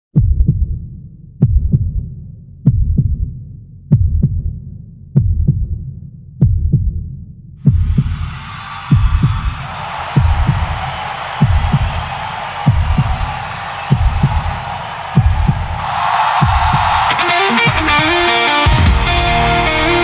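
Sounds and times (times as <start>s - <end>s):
heartbeat double thumps: 7.7s - 8.3s.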